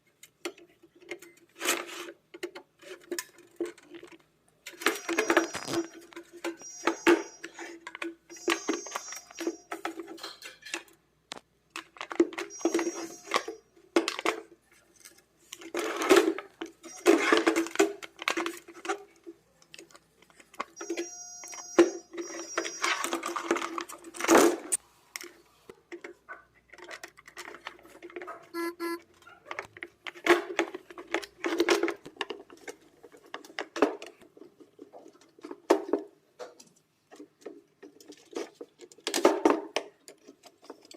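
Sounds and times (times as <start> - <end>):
high-pitched tones: 4.9 - 7.6, 8.3 - 9.8, 12.5 - 13.6, 28.6 - 29.0.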